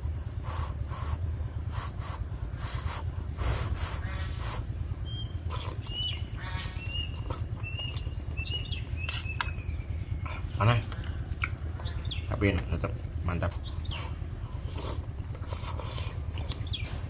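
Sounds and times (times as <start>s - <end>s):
low rumble: 0.0s - 17.0s
bird chirping: 0.5s - 17.0s.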